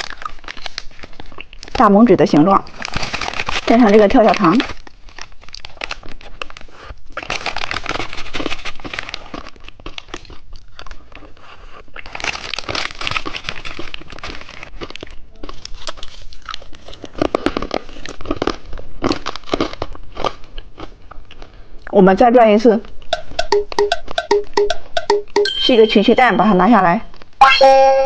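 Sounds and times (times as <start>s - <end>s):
popping candy crackling: 0.0s - 10.8s, 12.0s - 21.0s, 23.0s - 25.5s
packet crinkling: 0.0s - 11.0s, 12.0s - 21.5s.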